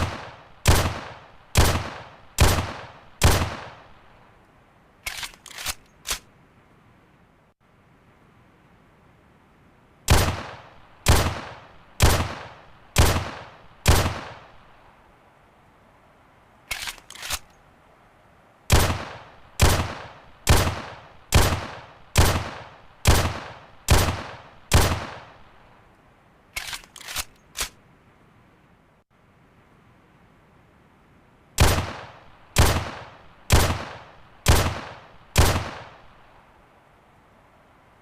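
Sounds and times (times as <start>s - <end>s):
pistol shots: 0.0s - 4.0s, 10.1s - 14.6s, 18.7s - 25.4s, 31.6s - 36.1s.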